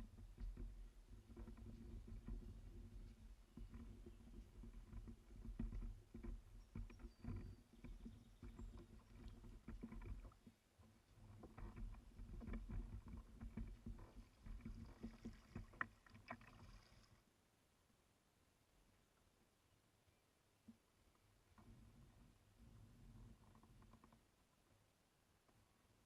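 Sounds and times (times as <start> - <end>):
paddle knocking on hull: 0.0 - 17.0
water splashing: 14.1 - 17.2.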